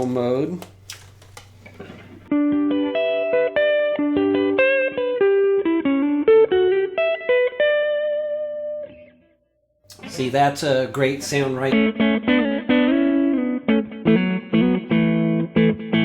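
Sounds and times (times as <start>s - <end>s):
faint amp hum: 0.0s - 2.3s
electric guitar notes: 1.7s - 9.3s, 9.9s - 16.0s.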